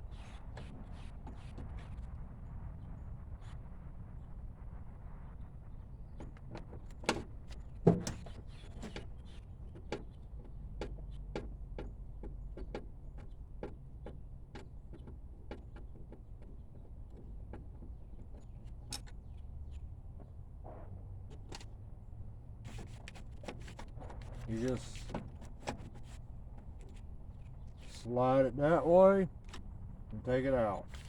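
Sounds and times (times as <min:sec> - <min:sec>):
low steady hum: 0:00.0 - 0:15.5.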